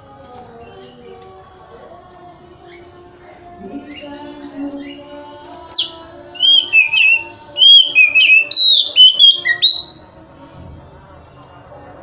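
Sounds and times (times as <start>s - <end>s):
bird singing whistled notes: 5.7s - 10.0s.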